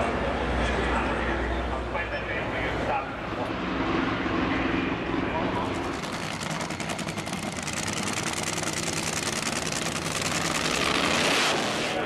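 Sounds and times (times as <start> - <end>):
drag racing engine crackling: 5.4 - 12.0.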